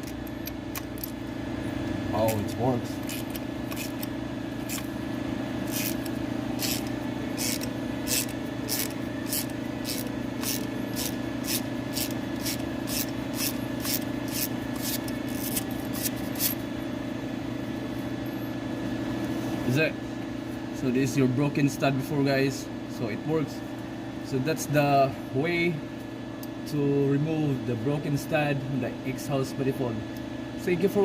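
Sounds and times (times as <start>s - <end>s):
low mechanical hum: 0.0s - 31.0s
ratchet wrench clicking: 3.0s - 4.8s, 5.7s - 16.6s.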